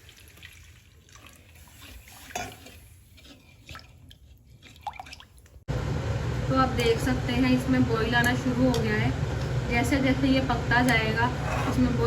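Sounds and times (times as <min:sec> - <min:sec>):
liquid sloshing in a pan: 0:00.0 - 0:05.6.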